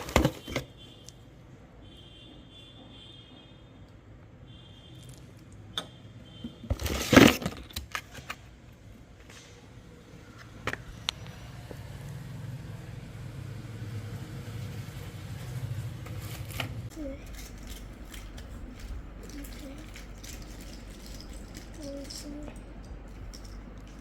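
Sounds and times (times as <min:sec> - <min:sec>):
handling clicks and knocks: 0:16.9 - 0:24.0.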